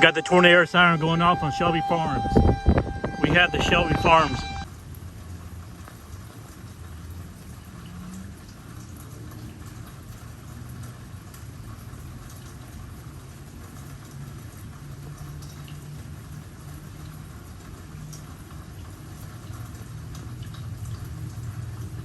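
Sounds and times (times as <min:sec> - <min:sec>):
rain drops ticking: 0:00.0 - 0:22.0
steady low rumble of rain: 0:00.0 - 0:22.0.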